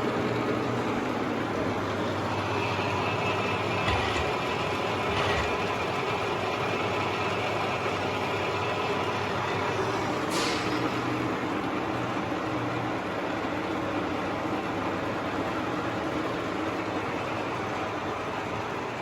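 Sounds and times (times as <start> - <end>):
milling machine humming: 1.3 - 10.2.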